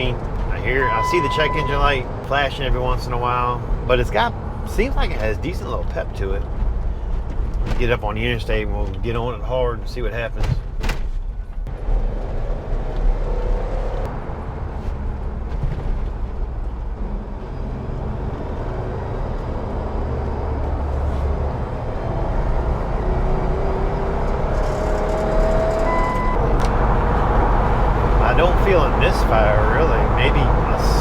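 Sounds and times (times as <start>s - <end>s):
road rumble: 0.0s - 31.0s
engine accelerating hard: 16.7s - 31.0s.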